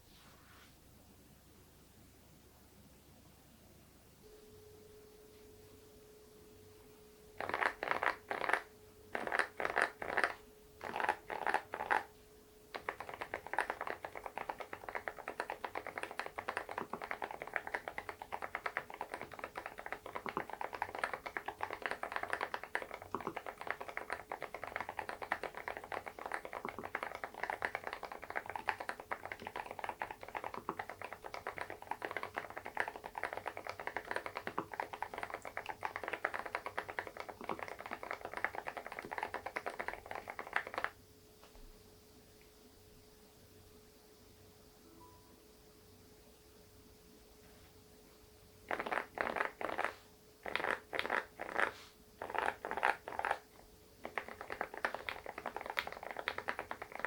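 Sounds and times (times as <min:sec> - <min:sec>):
fast typing on mechanical keyboard: 0:07.4 - 0:12.1, 0:12.7 - 0:41.0, 0:48.7 - 0:57.0.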